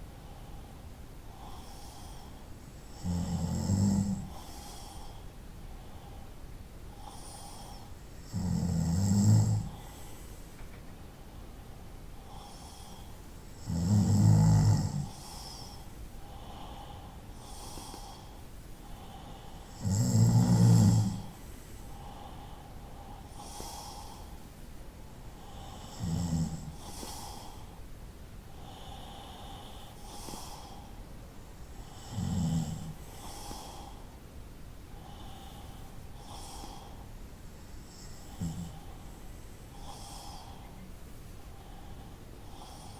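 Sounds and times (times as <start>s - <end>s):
faint breathing: 0.0s - 8.4s, 9.4s - 42.9s
person snoring: 2.9s - 5.2s, 7.0s - 10.2s, 12.3s - 18.4s, 19.0s - 21.4s, 25.4s - 27.7s, 31.8s - 34.0s, 35.0s - 37.0s, 37.9s - 39.0s.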